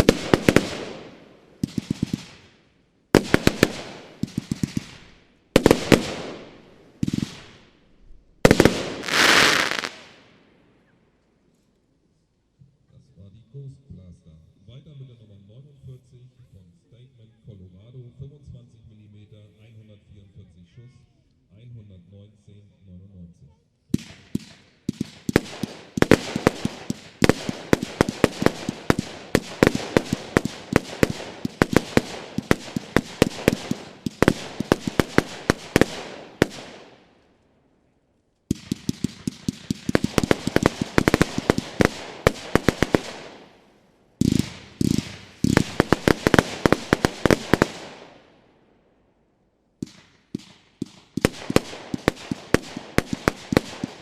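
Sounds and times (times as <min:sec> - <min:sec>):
firework battery firing: 0:00.0 - 0:02.6, 0:03.2 - 0:07.8, 0:08.4 - 0:10.4, 0:24.0 - 0:37.2, 0:38.5 - 0:48.4, 0:49.8 - 0:54.0.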